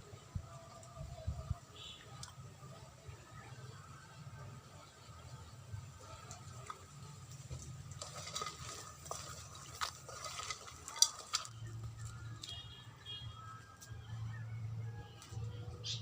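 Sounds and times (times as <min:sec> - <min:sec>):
utensil scraping in cooking pot: 0:06.4 - 0:11.7.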